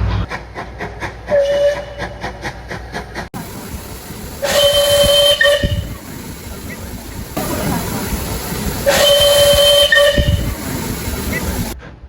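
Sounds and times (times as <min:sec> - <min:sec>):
steam hiss: 0:00.4 - 0:11.8
steam locomotive whistle: 0:01.3 - 0:02.3, 0:03.4 - 0:11.8
fast even chuffing beat: 0:03.4 - 0:11.8.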